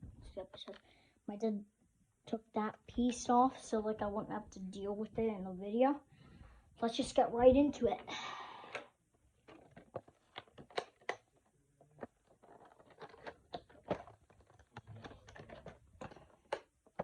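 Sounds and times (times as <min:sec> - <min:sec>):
box rustling: 0:09.4 - 0:17.0.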